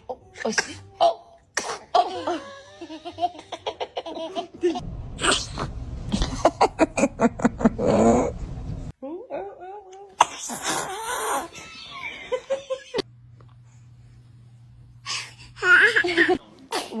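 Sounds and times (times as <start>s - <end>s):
baby sneezing: 0.4s - 0.9s, 1.6s - 2.0s, 10.2s - 11.4s, 16.7s - 17.0s
people laughing: 6.1s - 8.4s, 11.5s - 13.0s.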